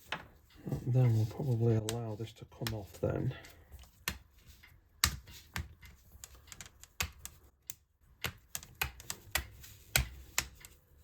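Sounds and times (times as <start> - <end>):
sharp plastic clicks and taps: 4.9 - 10.8.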